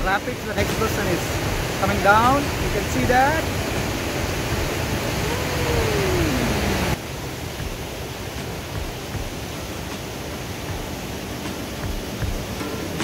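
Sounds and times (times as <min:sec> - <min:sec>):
rushing water roar: 0:00.0 - 0:13.0
drawn-out rising tone: 0:04.9 - 0:07.0.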